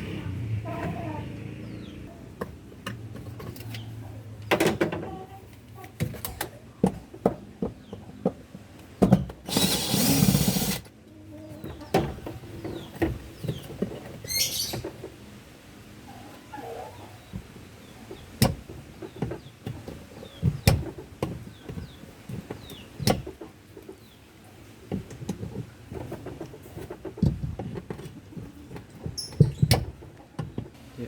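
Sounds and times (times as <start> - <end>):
knocks and clicks of hand work: 18.3 - 23.5.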